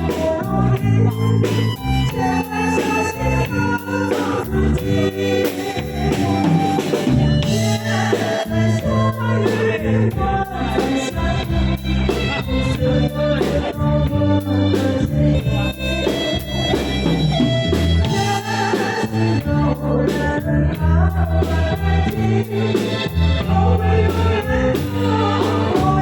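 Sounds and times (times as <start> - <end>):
organ-like keyboard melody: 0.0 - 26.0
steady drum beat: 0.0 - 26.0.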